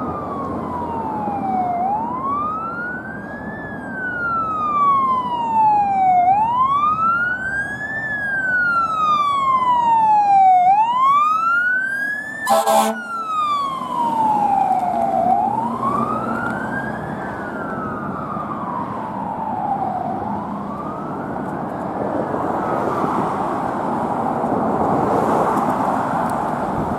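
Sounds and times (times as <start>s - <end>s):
fire engine siren wailing: 0.0s - 26.9s
road and engine noise: 0.0s - 26.9s
air horn blast: 12.4s - 13.1s.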